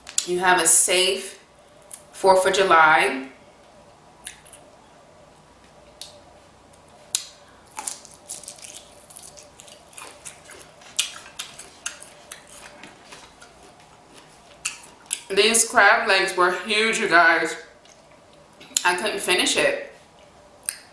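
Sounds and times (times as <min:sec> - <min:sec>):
wet squishy chewing: 0:07.1 - 0:15.3
crab shell cracking: 0:07.2 - 0:15.3.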